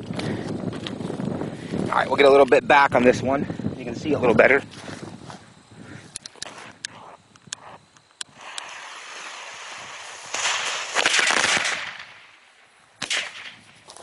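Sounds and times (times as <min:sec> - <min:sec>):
firecracker fuse hissing: 0:07.5 - 0:14.0
firecracker crackle of rapid pops: 0:08.2 - 0:14.0.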